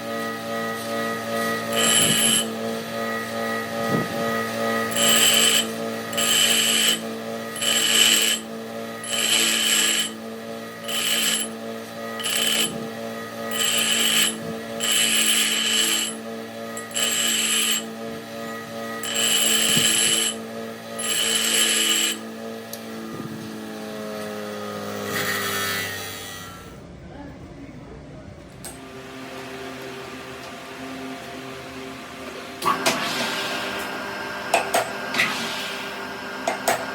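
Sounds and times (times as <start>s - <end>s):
metal lathe humming: 1.5s - 3.2s, 4.6s - 22.3s
cutting tool biting metal: 6.2s - 7.0s, 13.5s - 16.2s.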